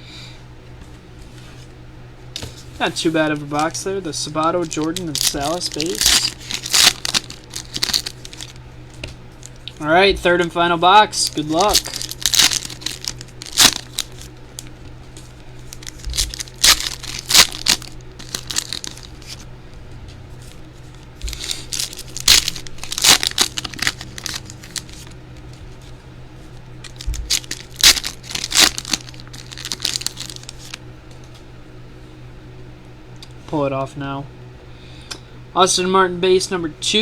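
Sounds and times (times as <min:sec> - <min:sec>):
plastic wrapping tearing and crinkling: 0:04.6 - 0:08.6, 0:11.2 - 0:19.4, 0:20.4 - 0:25.9, 0:26.8 - 0:30.8.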